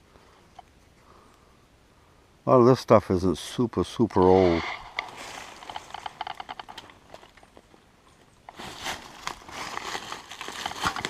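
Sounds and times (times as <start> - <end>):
rustling and crunching in dry leaves: 4.3 - 11.0.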